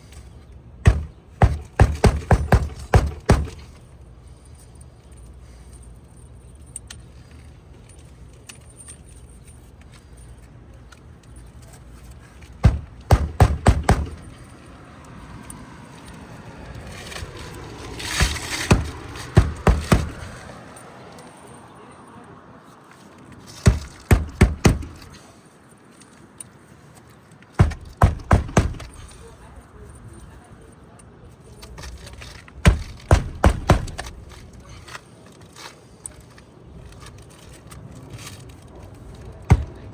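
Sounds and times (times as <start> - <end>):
hammer striking roofing nails: 0.8 - 3.8, 12.6 - 14.4, 17.0 - 20.5, 23.6 - 25.2, 27.6 - 29.2, 31.8 - 34.9, 39.5 - 39.9.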